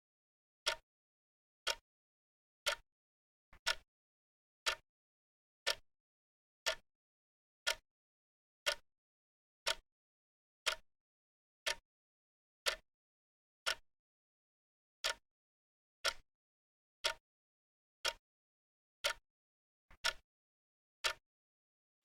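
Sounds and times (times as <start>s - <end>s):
wrist watch ticking: 6.6s - 6.8s, 20.0s - 20.2s.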